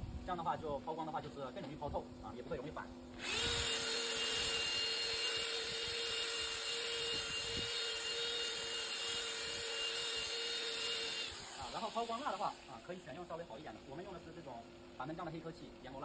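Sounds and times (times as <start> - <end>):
power tool whining: 2.9 - 15.0.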